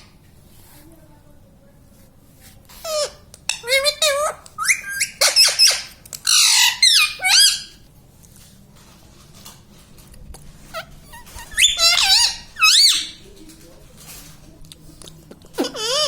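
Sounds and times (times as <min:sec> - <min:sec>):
parrot squawking: 0:02.8 - 0:07.8, 0:10.7 - 0:13.2, 0:15.6 - 0:16.0.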